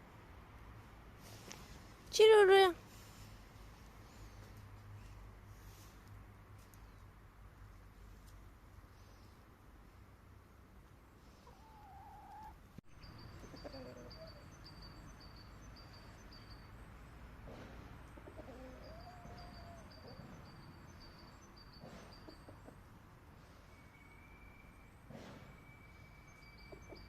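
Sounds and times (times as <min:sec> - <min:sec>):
chickens calling softly: 0:11.2 - 0:14.6, 0:18.0 - 0:20.3.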